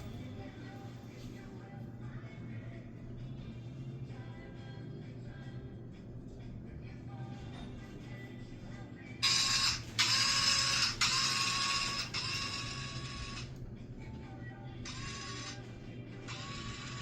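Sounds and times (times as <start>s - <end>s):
steady low hum: 0.0s - 17.0s
small motor whirring: 14.8s - 15.6s, 16.3s - 17.0s.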